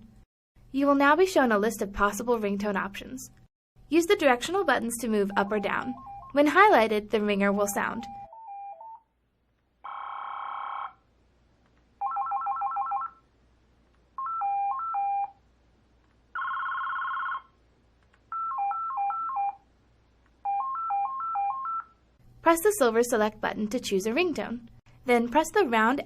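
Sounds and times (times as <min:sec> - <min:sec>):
electronic phone ringtones: 0:05.3 - 0:06.4, 0:08.0 - 0:09.1, 0:09.8 - 0:11.0, 0:12.0 - 0:13.2, 0:14.2 - 0:15.4, 0:16.4 - 0:17.6, 0:18.3 - 0:19.6, 0:20.4 - 0:22.0.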